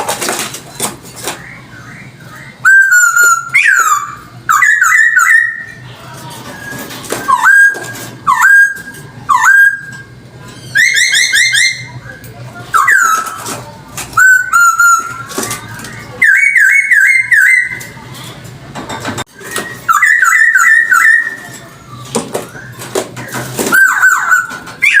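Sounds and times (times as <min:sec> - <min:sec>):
bird singing whistled phrases: 0:01.4 - 0:05.8, 0:06.6 - 0:13.4, 0:14.2 - 0:15.3, 0:15.9 - 0:18.0, 0:19.3 - 0:22.8, 0:23.7 - 0:25.0.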